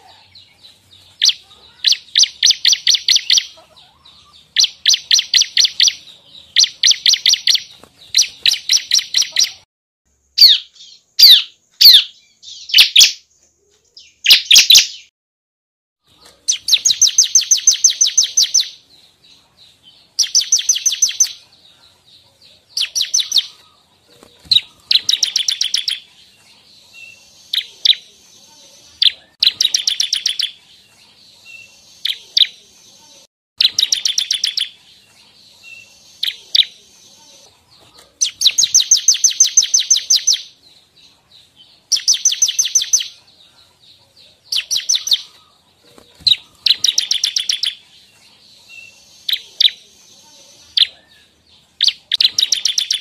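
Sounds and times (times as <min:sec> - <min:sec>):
bird singing rapid trills: 0:00.3 - 0:09.6, 0:16.5 - 0:21.4, 0:22.7 - 0:23.8, 0:38.2 - 0:43.2, 0:44.5 - 0:45.6, 0:46.2 - 0:53.0.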